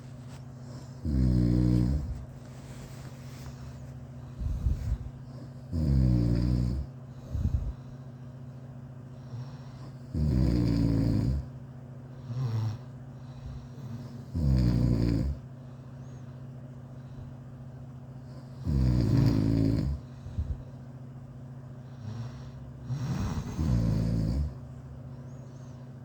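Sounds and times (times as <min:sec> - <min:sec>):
quiet breathing: 0:00.0 - 0:26.0
person snoring: 0:01.0 - 0:02.2, 0:05.7 - 0:07.8, 0:09.3 - 0:11.5, 0:13.9 - 0:15.4, 0:18.5 - 0:20.1, 0:22.0 - 0:24.6.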